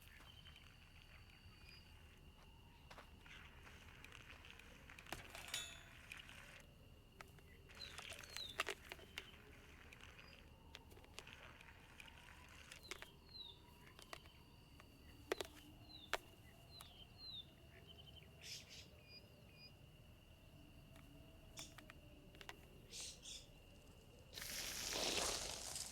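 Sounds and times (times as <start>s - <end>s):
short falling chirps: 24.4s - 25.9s.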